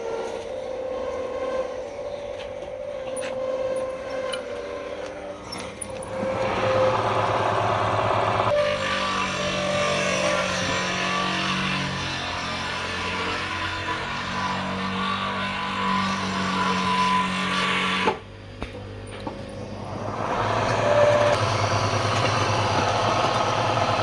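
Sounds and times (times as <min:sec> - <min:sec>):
wood lathe humming: 0:00.0 - 0:18.1, 0:19.6 - 0:24.0
turning tool cutting wood: 0:03.4 - 0:18.2, 0:19.8 - 0:24.0.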